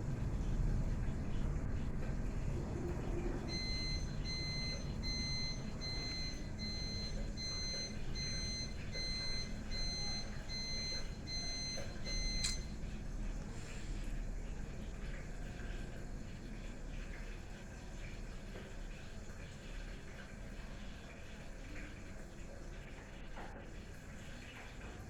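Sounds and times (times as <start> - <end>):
electronic alarm beeping: 3.5 - 12.7
sharp click: 12.4 - 12.6.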